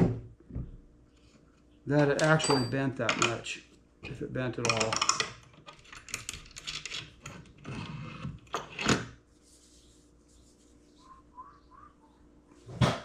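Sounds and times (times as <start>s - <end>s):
tools and parts clattering: 2.0s - 3.5s, 4.1s - 9.1s.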